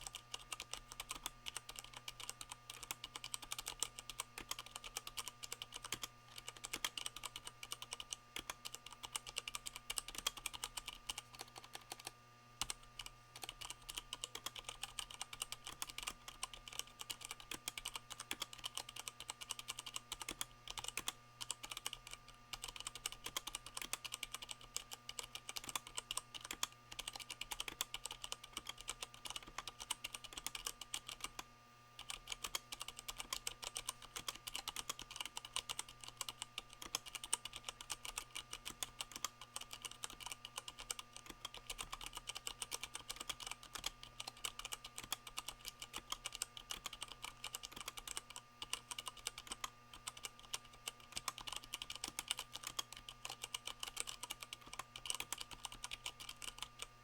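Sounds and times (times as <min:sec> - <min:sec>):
fast typing on mechanical keyboard: 0:00.0 - 0:31.4, 0:32.0 - 0:56.9.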